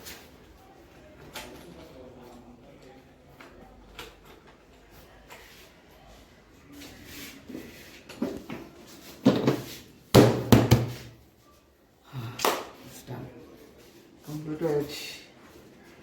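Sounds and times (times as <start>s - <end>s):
parts and tools knocking: 10.2s - 11.1s.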